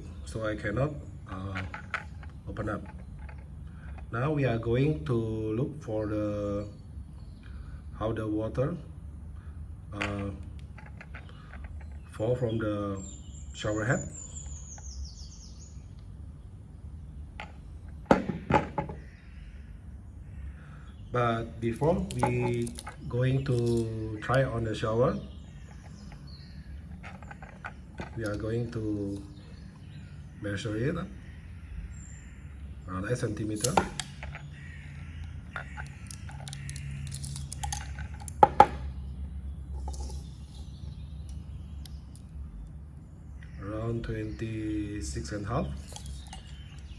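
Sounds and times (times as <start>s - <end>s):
steady low hum: 0.0s - 46.9s
small bird trilling: 11.0s - 32.6s, 33.4s - 42.1s
clicks and taps of handling: 21.8s - 24.5s, 26.9s - 29.2s, 33.6s - 34.5s, 35.2s - 38.9s.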